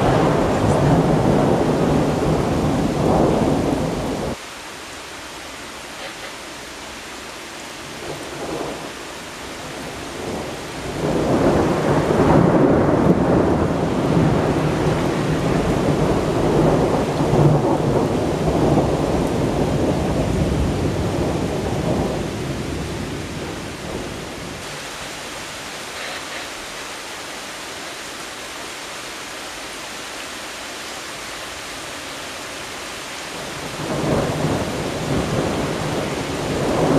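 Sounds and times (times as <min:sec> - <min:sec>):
thunder rumbling: 0:00.0 - 0:04.4, 0:07.8 - 0:26.4, 0:33.3 - 0:36.9
steady rain: 0:00.0 - 0:36.9.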